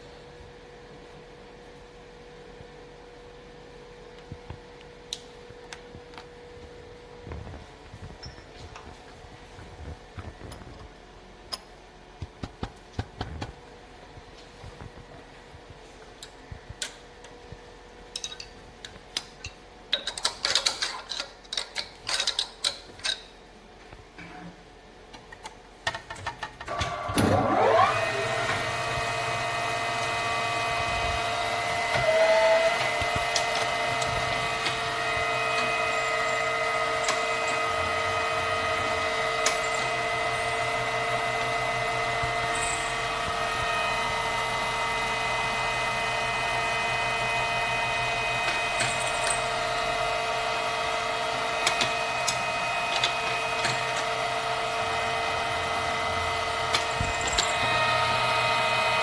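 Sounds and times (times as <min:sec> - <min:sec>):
milling machine spindle motor whine: 0:26.7 - 0:59.0.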